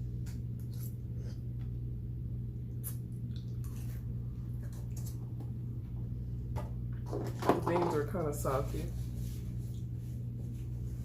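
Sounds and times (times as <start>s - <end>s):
low hum: 0.0s - 7.1s
chewing and wet smacks: 0.2s - 1.8s, 2.7s - 5.3s.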